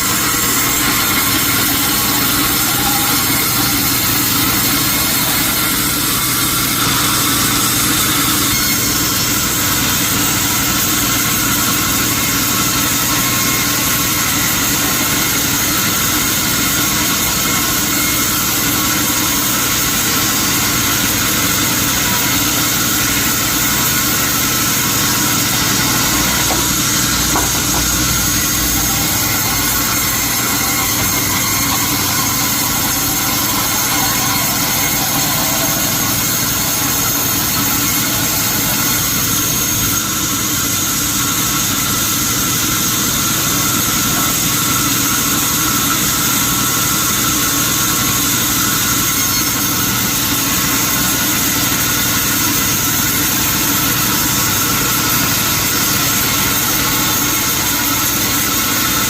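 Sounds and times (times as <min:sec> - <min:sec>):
sawmill machinery humming: 0:00.0 - 0:59.0.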